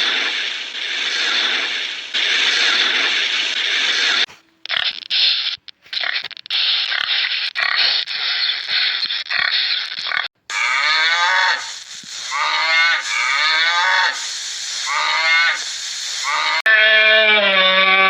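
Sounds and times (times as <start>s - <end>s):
cattle mooing: 10.5s - 11.7s.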